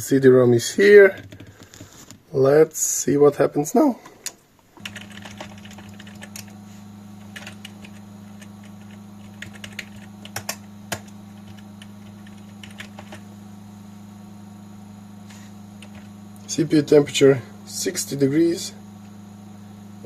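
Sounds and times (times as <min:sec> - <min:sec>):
computer low hum: 0:00.0 - 0:20.0
keyboard keys tapping: 0:01.1 - 0:01.6, 0:04.8 - 0:06.6, 0:07.2 - 0:13.3, 0:15.8 - 0:16.1.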